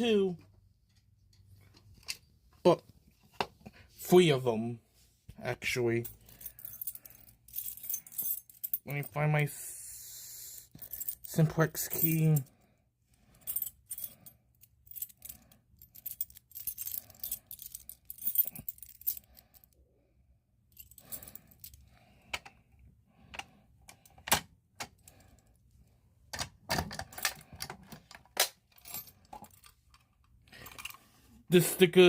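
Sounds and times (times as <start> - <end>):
keys jangling: 6.0 - 9.1, 10.7 - 12.5, 13.4 - 19.7, 27.0 - 27.7, 28.7 - 31.0.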